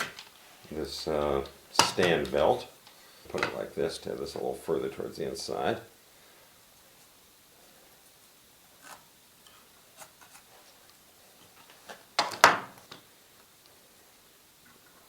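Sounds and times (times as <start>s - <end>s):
wood pieces clicking and knocking: 11.7s - 13.0s.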